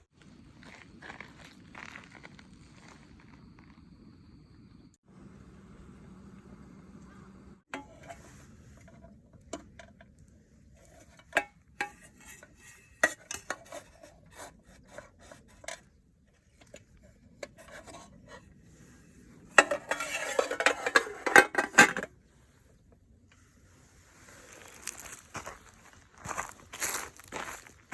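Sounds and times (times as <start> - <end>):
cutlery scraping: 19.5 - 22.0.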